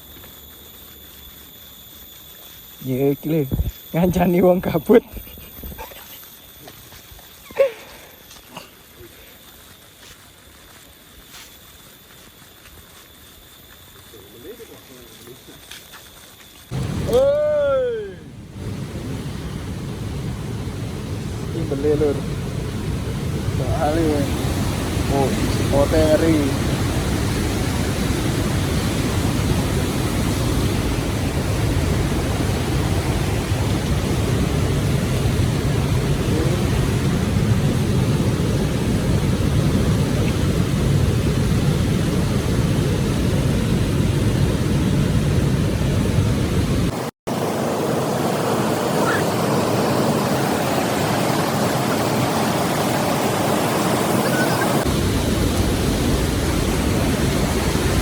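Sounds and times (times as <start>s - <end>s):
waterfall roaring: 16.7s - 58.0s.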